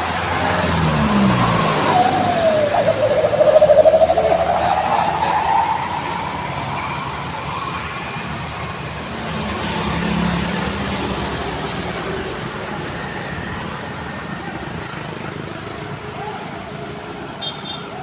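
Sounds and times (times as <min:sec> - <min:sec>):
rising whine: 0:00.0 - 0:09.2
vehicle passing: 0:00.0 - 0:10.9
highway traffic: 0:00.0 - 0:18.0.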